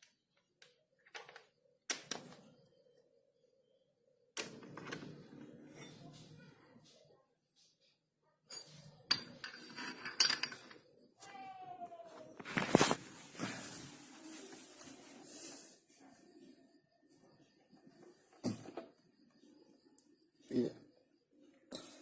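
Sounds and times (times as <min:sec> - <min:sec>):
metal tools clinking: 0:08.5 - 0:10.8.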